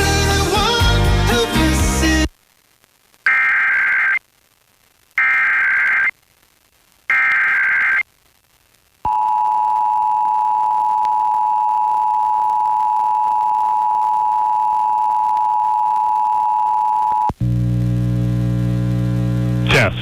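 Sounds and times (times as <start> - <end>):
data header tones: 3.3 - 4.2, 5.2 - 6.1, 7.1 - 8.0.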